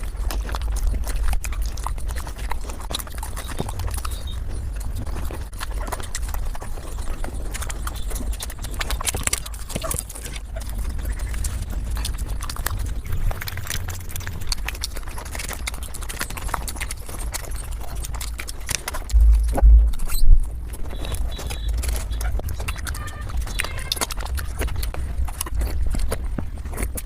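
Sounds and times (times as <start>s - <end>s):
rapid chewing and smacking: 0.0s - 27.0s
loud low bump: 19.1s - 21.0s
low rumble: 19.1s - 22.5s.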